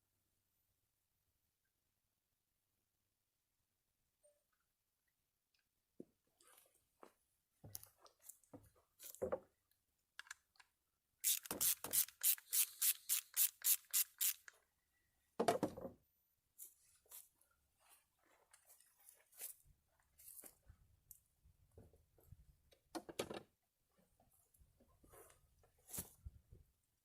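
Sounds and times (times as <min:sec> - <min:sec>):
small handling clicks: 0:10.2 - 0:14.6
socket ratchet rasping: 0:11.2 - 0:14.5.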